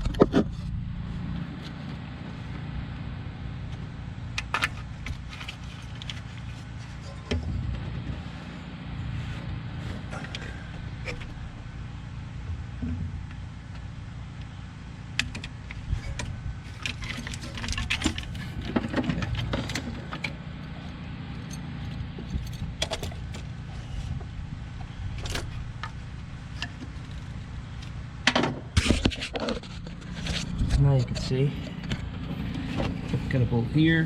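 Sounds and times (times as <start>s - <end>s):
low background rumble: 0.0s - 34.0s
metal tools clinking and rattling: 21.4s - 24.0s.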